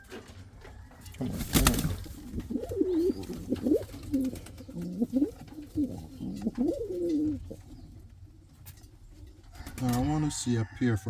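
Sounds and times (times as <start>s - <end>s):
pigeon cooing: 1.0s - 8.1s.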